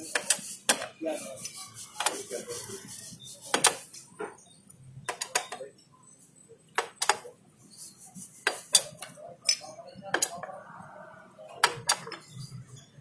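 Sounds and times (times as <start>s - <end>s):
sharp metallic clicks and taps: 4.7s - 5.6s.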